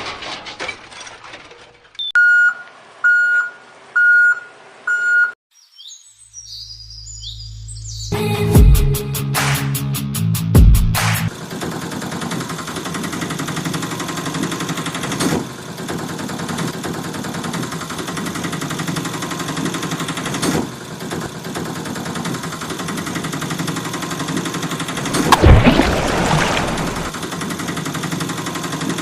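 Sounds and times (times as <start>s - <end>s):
engine rattling: 11.3s - 25.3s.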